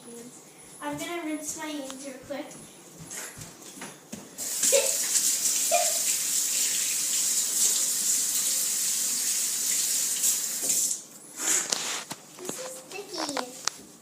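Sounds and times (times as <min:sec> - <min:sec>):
water running from a tap: 0:04.4 - 0:11.0.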